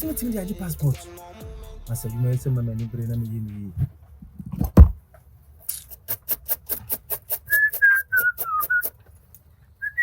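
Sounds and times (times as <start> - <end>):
rapid sharp strokes: 5.7 - 9.0
person whistling: 7.4 - 9.0, 9.8 - 10.0.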